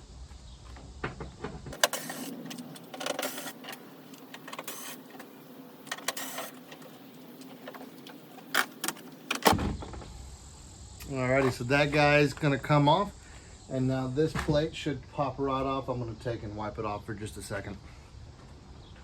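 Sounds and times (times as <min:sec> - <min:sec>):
electric driver motor whir: 0:01.8 - 0:09.5.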